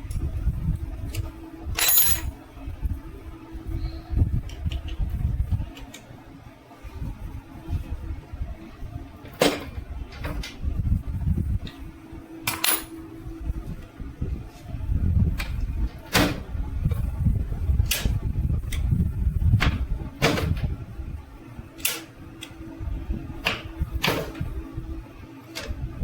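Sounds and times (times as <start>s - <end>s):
low rumble of handling: 0.0s - 26.0s
metal parts knocking and clinking: 1.8s - 2.3s, 12.5s - 13.0s.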